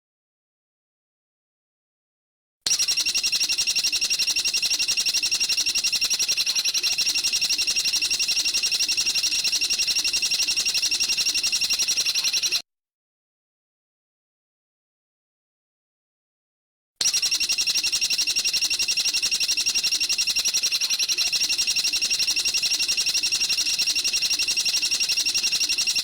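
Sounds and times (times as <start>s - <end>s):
songbird rapid trill: 2.7s - 12.6s, 17.0s - 26.0s.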